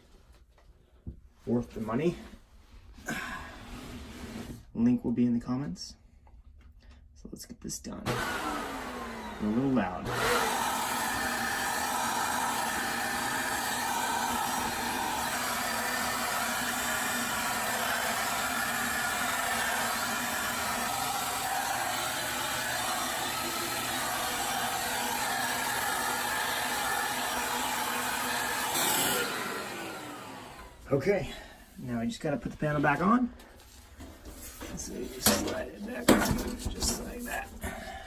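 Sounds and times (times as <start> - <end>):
vacuum cleaner running: 8.0 - 31.0.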